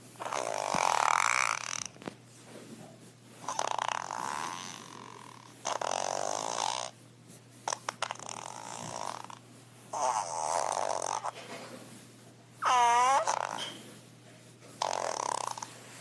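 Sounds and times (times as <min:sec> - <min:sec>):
fart sound effects: 0:00.2 - 0:02.0, 0:03.4 - 0:05.0, 0:05.6 - 0:06.9, 0:07.7 - 0:11.4, 0:12.6 - 0:13.8, 0:14.8 - 0:15.7.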